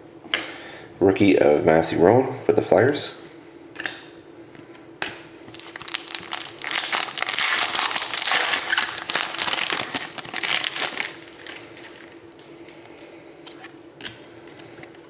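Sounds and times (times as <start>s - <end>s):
plastic wrapper crinkling and tearing: 5.5s - 12.2s.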